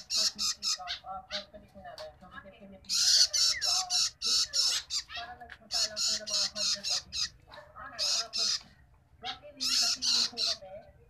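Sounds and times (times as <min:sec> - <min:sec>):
bird begging calls: 0:00.0 - 0:01.6, 0:02.8 - 0:10.7.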